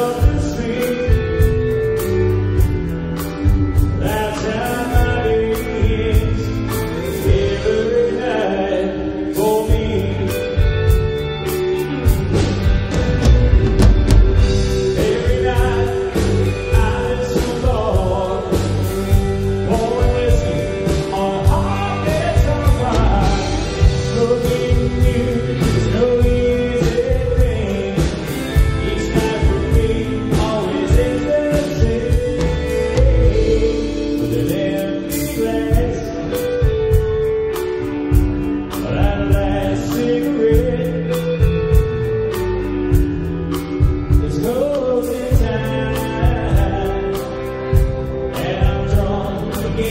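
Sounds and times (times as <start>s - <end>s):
drums keeping a steady beat: 0.0s - 8.2s, 9.3s - 49.9s
person singing: 0.0s - 49.9s.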